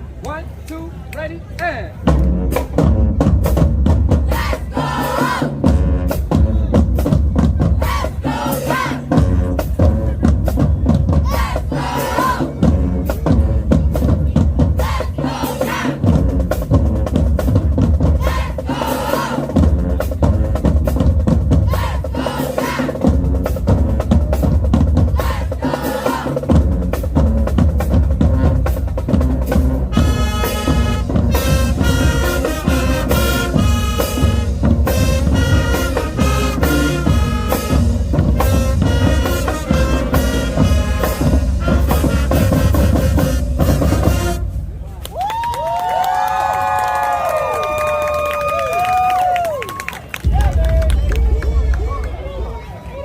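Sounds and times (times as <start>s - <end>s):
marching drumline cadence: 0.0s - 53.0s
heavy bass drums: 1.9s - 45.0s, 50.2s - 53.0s
crowd shouting: 7.8s - 9.1s, 11.2s - 12.5s, 14.8s - 16.0s, 18.2s - 19.4s, 21.7s - 22.9s, 25.2s - 26.4s
brass sustained chords: 29.2s - 44.8s.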